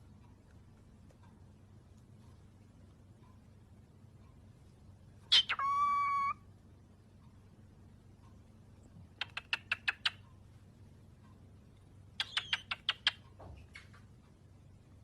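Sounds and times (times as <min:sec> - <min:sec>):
cockatiel calling: 0:05.3 - 0:06.4, 0:12.2 - 0:13.2
cockatiel chirps: 0:05.3 - 0:06.4, 0:09.2 - 0:10.2, 0:12.2 - 0:13.2.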